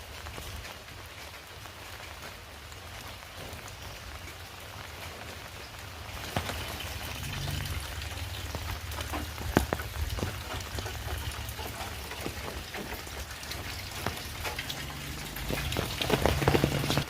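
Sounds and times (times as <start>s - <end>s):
close raindrops striking: 0.0s - 17.0s
heavy rain: 0.0s - 17.0s.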